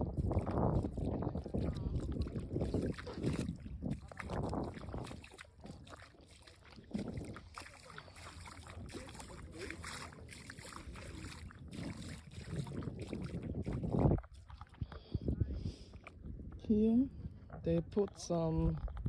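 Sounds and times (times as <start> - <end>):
seawater sloshing and splashing: 0.0 - 15.2
wind rumbling on microphone: 0.0 - 19.0.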